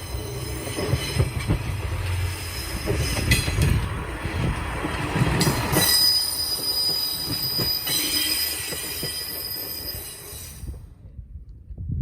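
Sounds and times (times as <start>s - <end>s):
train wheels squealing: 0.0s - 3.8s, 5.2s - 10.9s
train rumbling: 0.0s - 12.0s.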